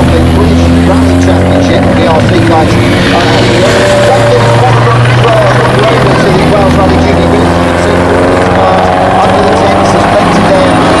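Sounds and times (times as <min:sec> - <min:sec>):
helicopter drone: 0:00.0 - 0:11.0.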